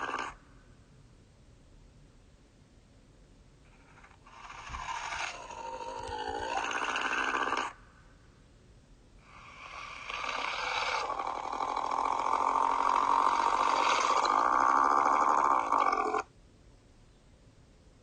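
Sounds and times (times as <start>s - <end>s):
growling snarl: 0.0s - 0.4s, 4.3s - 7.8s, 9.3s - 16.2s.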